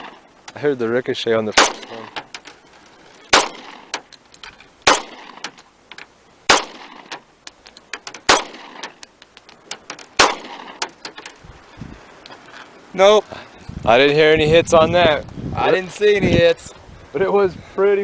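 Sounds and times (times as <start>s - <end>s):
gunshots: 1.5s - 2.4s, 3.3s - 4.1s, 4.8s - 5.6s, 6.5s - 7.2s, 8.2s - 9.0s, 10.2s - 11.0s.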